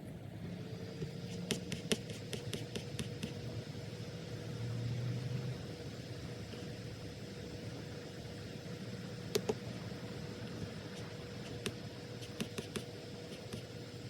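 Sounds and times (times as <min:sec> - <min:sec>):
low room hum: 0:00.0 - 0:14.0
clicks and taps at a desk: 0:11.5 - 0:13.7.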